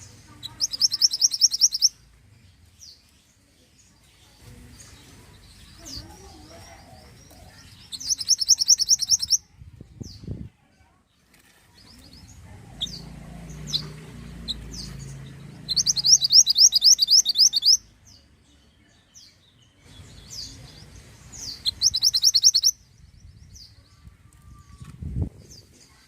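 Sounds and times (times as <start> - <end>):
bird high chirps: 0.3 - 2.0, 4.2 - 10.4, 11.8 - 24.8
bird fast trill: 0.4 - 1.9, 7.9 - 9.4, 12.8 - 17.8, 21.4 - 22.8.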